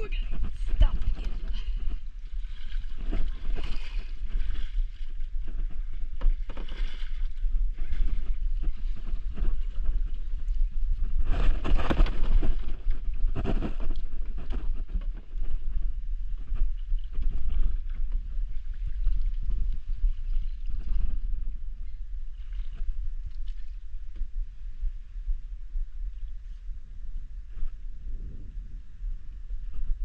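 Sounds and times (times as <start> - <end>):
wind rumble on microphone: 0.0 - 30.0
paddle strokes and splashes: 0.1 - 24.8.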